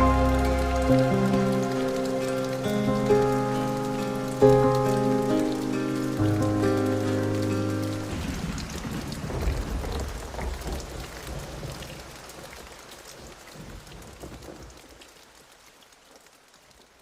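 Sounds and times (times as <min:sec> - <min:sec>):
thunder rumbling: 0:00.0 - 0:03.8, 0:06.2 - 0:11.7
rain pattering: 0:00.0 - 0:17.0.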